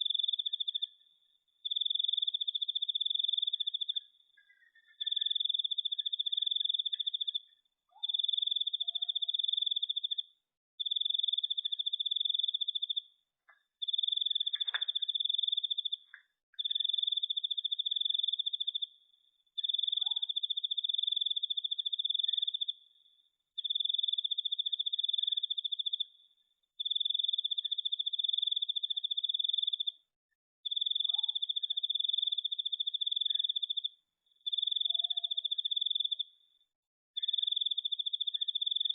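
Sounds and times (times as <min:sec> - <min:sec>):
cricket trilling: 0:30.6 - 0:36.3, 0:37.2 - 0:38.9.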